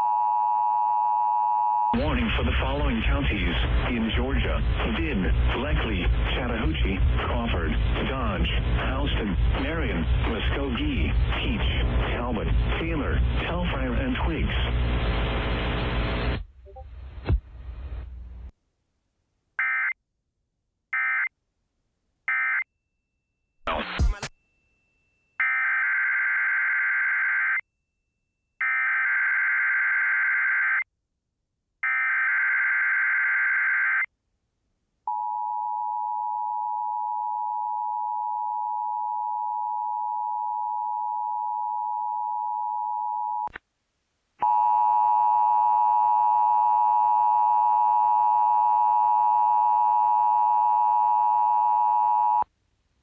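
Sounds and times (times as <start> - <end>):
harsh two-tone alert signal: 23.7 - 24.3.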